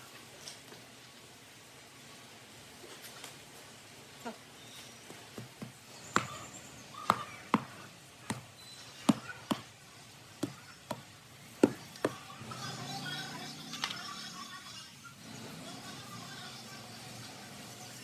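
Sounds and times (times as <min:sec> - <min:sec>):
sharp ringing knocks: 0:05.4 - 0:09.7, 0:10.4 - 0:12.2.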